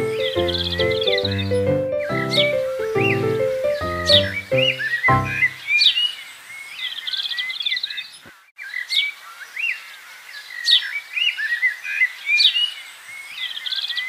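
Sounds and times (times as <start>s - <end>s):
songbirds chirping and singing: 0.0s - 14.0s.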